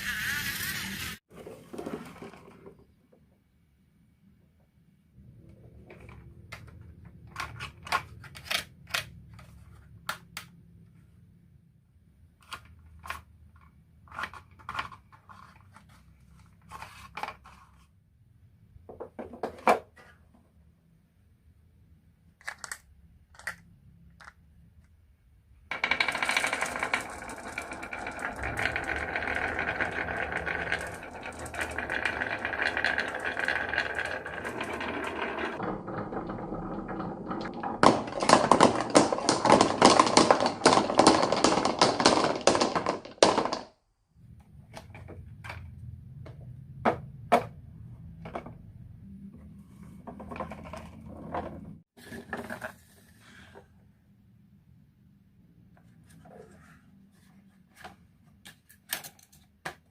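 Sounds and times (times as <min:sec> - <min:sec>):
marbles rattling along a track: 0:25.7 - 0:43.6.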